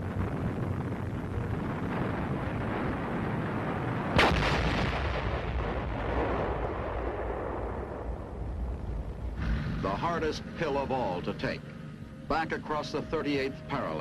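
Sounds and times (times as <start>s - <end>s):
loud explosion: 0.0s - 9.8s
continuous low rumble: 0.0s - 14.0s.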